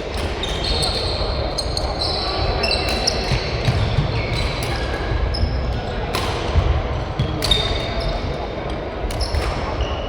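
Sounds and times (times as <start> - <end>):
shoes squeaking on court floor: 0.1 - 6.2.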